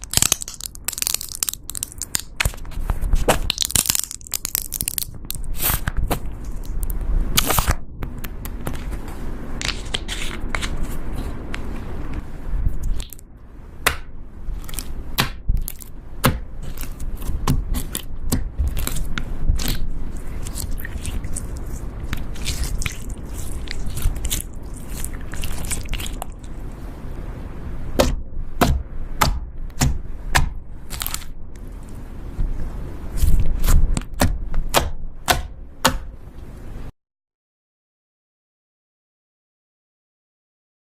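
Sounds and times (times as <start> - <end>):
slime squishing and popping: 0.0 - 2.6, 3.2 - 7.8, 13.8 - 26.6, 28.0 - 31.3.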